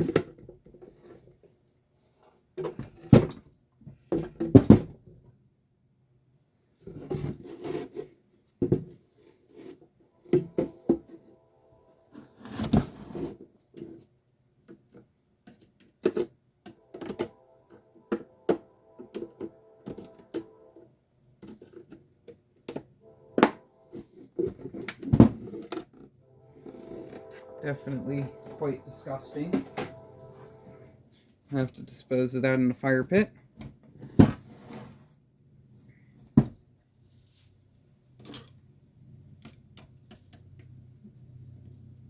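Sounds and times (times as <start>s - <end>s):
faint music: 10.2s - 13.3s, 16.8s - 20.9s, 23.0s - 24.6s, 26.2s - 33.2s.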